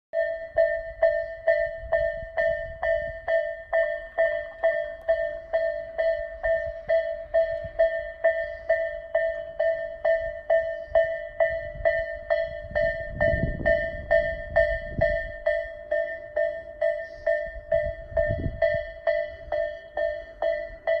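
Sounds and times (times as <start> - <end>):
level crossing alarm dinging: 0.2 - 21.0.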